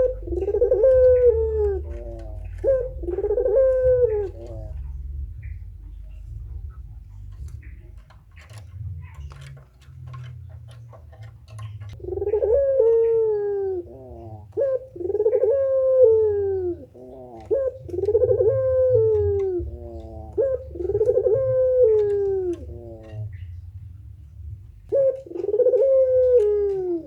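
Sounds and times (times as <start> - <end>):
dove cooing: 0.0 - 27.0
low hum: 0.0 - 27.0
small clicks: 7.2 - 12.0.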